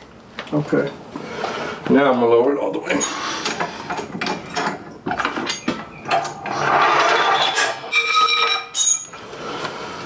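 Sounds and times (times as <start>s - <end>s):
high squeak: 7.4s - 9.1s.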